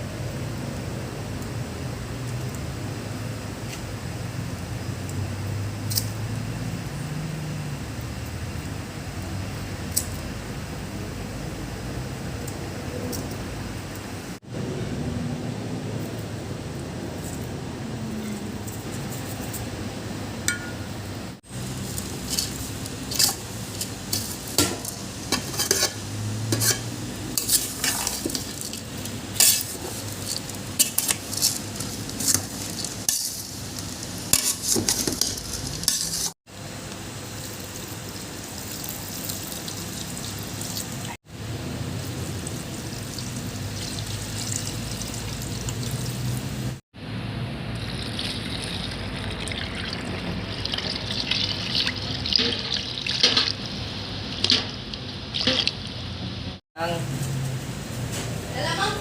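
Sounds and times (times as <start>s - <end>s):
food sizzling in pot: 20.5s - 46.8s, 47.7s - 56.6s
spoon scraping and clinking pot: 22.3s - 28.8s.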